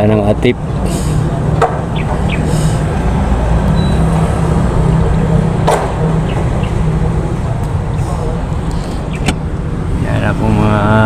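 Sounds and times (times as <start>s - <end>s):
engine rumbling: 0.0s - 11.0s
sharp knock: 1.6s - 2.2s, 5.6s - 6.0s.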